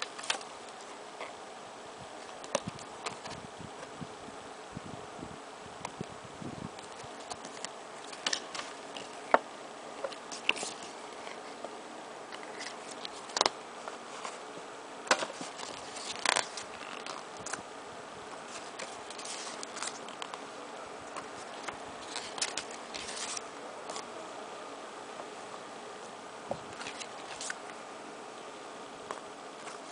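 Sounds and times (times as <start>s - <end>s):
packaging rustling: 10.0s - 11.5s, 15.1s - 17.6s, 18.4s - 20.4s, 21.1s - 24.0s, 26.7s - 27.8s.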